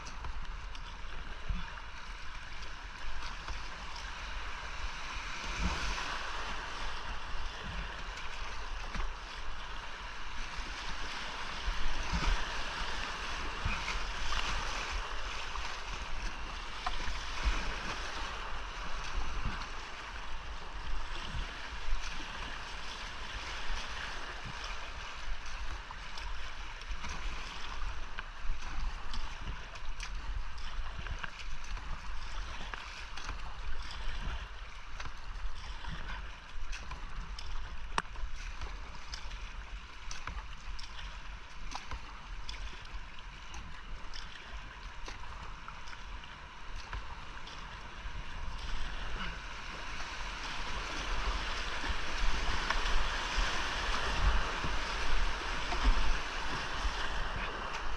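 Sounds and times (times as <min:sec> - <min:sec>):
creek rapids rushing: 0:47.1 - 0:57.9.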